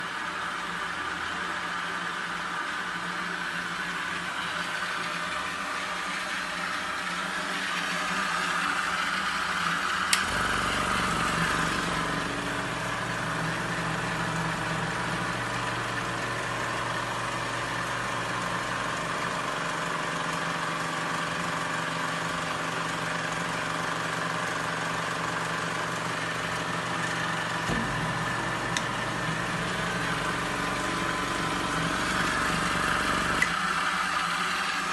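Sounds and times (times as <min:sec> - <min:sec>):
air compressor hum and hiss: 0:00.1 - 0:34.9
switch click: 0:28.7 - 0:28.9.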